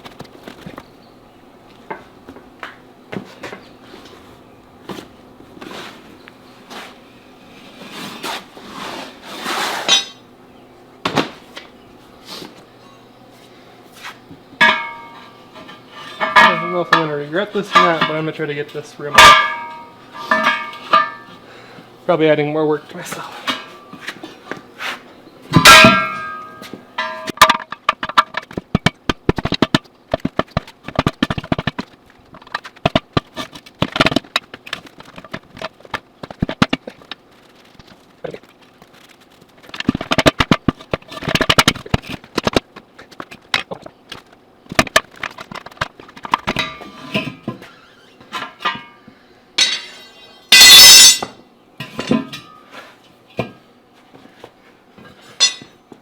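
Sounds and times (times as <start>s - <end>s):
metal tools clanking on rim: 14.6s - 21.4s, 25.5s - 27.8s, 46.4s - 49.0s, 49.6s - 52.7s, 55.2s - 55.8s.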